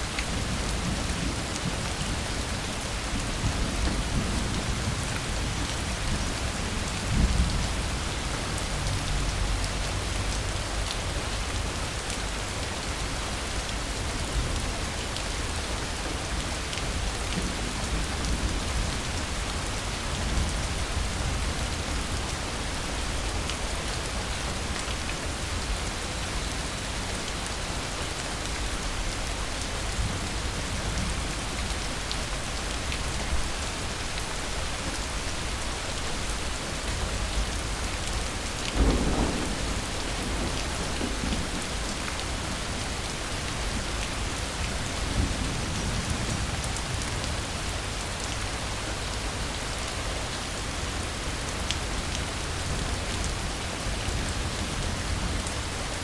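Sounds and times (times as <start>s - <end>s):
steady rain falling: 0.0s - 56.0s
distant thunder rumble: 38.7s - 42.8s.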